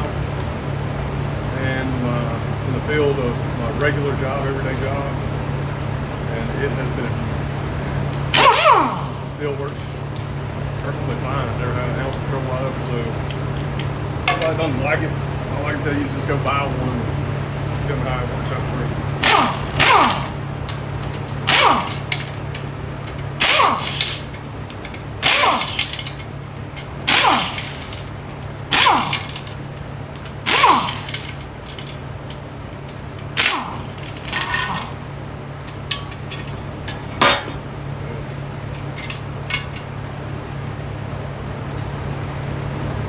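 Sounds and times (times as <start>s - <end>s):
steady low hum: 0.0s - 43.0s
air impact wrench bursts: 8.3s - 9.4s, 19.2s - 32.0s, 33.3s - 35.1s.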